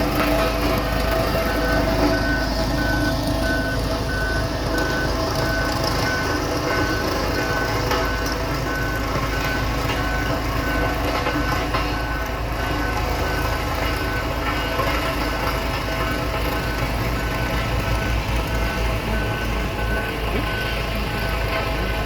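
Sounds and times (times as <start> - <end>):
diesel engine running: 0.0 - 22.0
reversing alarm beeping: 0.0 - 22.0.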